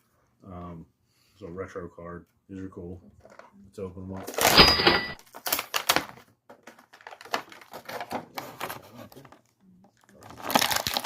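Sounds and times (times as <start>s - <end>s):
packaging rustling: 5.2s - 11.0s
plastic packaging clicks and crinkles: 5.2s - 11.0s.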